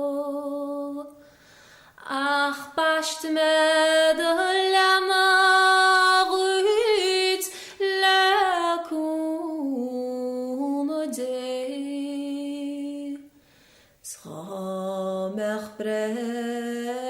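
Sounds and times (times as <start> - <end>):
singer breathing: 1.2 - 2.0, 7.5 - 7.8, 13.3 - 14.0.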